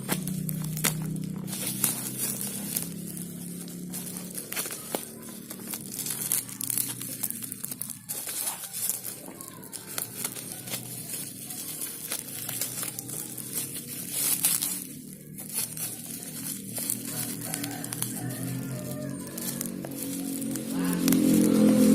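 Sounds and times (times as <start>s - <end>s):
packaging crinkling and tearing: 0.0s - 21.9s.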